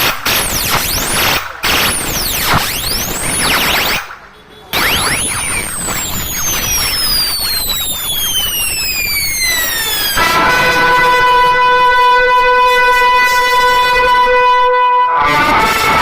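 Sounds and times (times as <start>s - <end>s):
electronic falling sweep: 0.6s - 4.0s, 4.8s - 10.7s
buzzy pitched tone: 4.8s - 8.0s.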